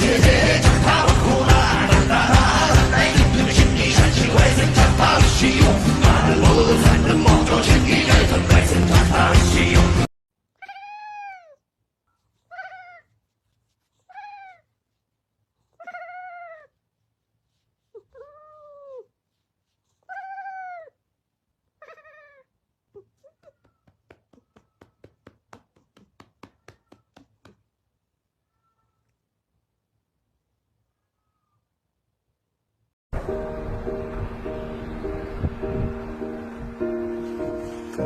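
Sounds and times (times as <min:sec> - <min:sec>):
cat meowing: 0:10.6 - 0:11.6, 0:12.5 - 0:13.1, 0:14.1 - 0:14.7, 0:15.8 - 0:16.8, 0:18.0 - 0:19.1, 0:20.1 - 0:21.0, 0:21.8 - 0:23.6, 0:28.5 - 0:29.1.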